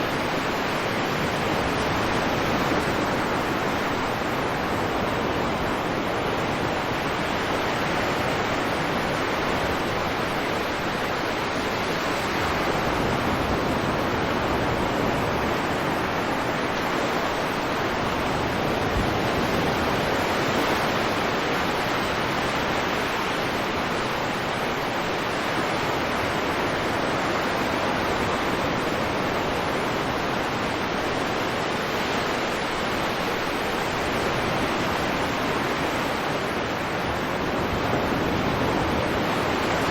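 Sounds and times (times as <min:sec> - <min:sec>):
wind: 0:00.0 - 0:39.9.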